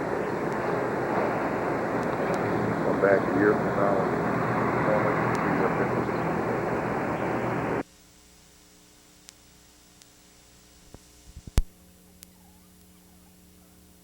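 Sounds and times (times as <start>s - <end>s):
traffic noise: 0.0s - 7.8s
wind: 0.0s - 14.0s
faint electrical hum: 5.5s - 14.0s.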